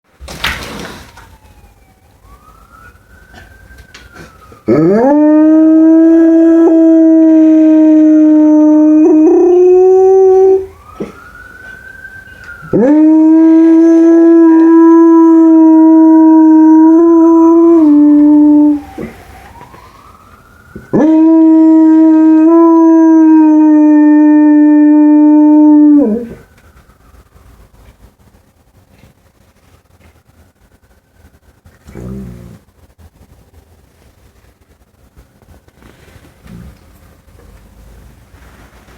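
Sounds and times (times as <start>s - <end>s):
police siren wailing: 1.0s - 28.0s
dog howling: 4.7s - 11.2s, 12.6s - 19.5s, 20.9s - 26.4s.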